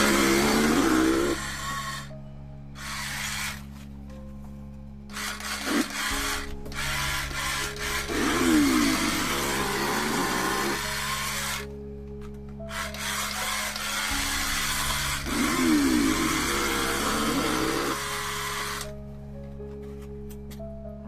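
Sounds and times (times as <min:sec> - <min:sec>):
background music with low tones: 0:00.0 - 0:21.0
harsh buzzing noise: 0:05.1 - 0:11.7.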